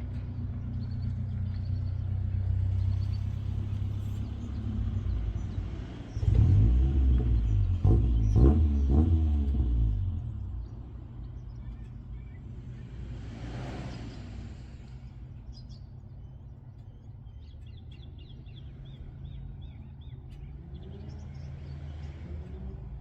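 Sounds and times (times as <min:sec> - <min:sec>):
distant road traffic rumble: 0:00.0 - 0:23.0
small birds chirping: 0:10.5 - 0:12.8, 0:15.1 - 0:23.0.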